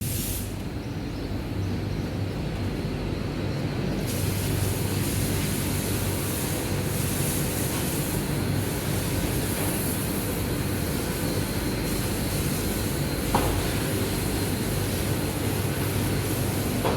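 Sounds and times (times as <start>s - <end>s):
machinery drone with low hum: 0.0s - 16.9s.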